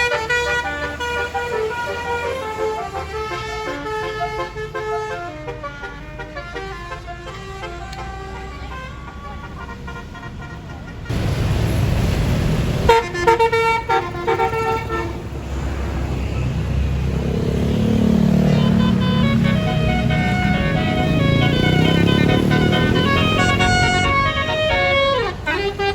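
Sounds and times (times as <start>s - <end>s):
musical bus horn tune: 0.0s - 11.3s, 12.8s - 15.5s, 17.6s - 25.9s
bus engine passing: 0.0s - 25.9s.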